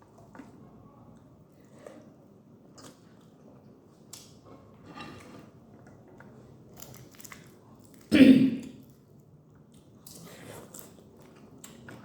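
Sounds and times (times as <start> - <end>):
person chewing food: 8.7 - 12.0.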